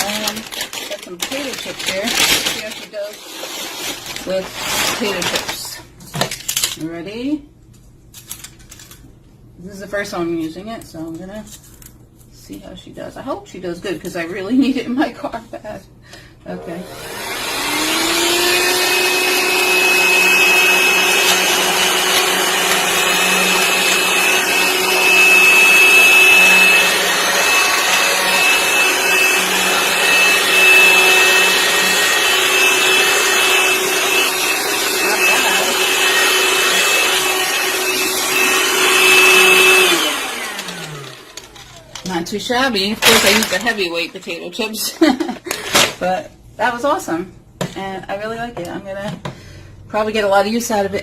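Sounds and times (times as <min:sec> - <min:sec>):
handheld vacuum cleaner whining: 0:00.0 - 0:05.4, 0:16.5 - 0:42.1, 0:43.0 - 0:44.0.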